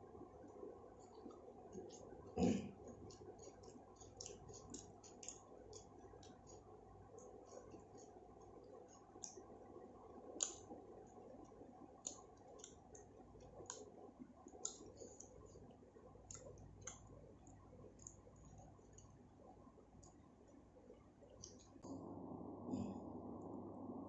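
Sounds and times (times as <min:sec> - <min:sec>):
faint low hum: 0:00.0 - 0:24.0
mouth chewing wet clicks: 0:01.0 - 0:19.2, 0:21.3 - 0:21.9.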